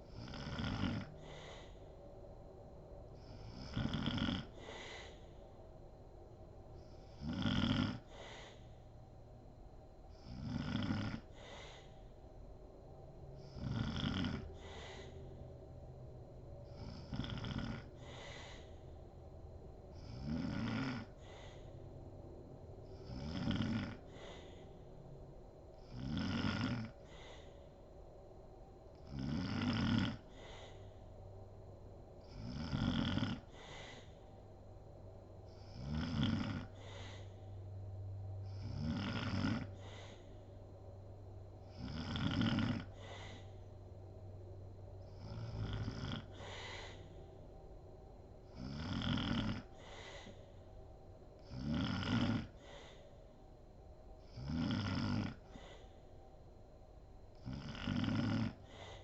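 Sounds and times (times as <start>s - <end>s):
woman snoring: 0.0s - 1.9s, 3.2s - 5.4s, 6.8s - 8.8s, 10.1s - 12.1s, 13.4s - 15.2s, 16.6s - 18.9s, 19.9s - 21.8s, 23.0s - 24.9s, 25.7s - 27.8s, 29.0s - 31.0s, 32.2s - 34.3s, 35.5s - 37.4s, 38.5s - 40.5s, 41.7s - 43.6s, 45.0s - 47.2s, 48.5s - 50.6s, 51.4s - 53.2s, 54.2s - 56.1s, 57.3s - 59.0s.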